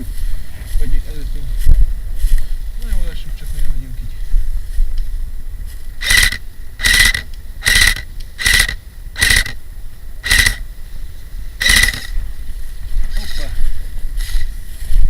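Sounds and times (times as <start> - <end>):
low wind rumble on microphone: 0.0 - 15.0
scuffing footsteps: 1.6 - 3.7.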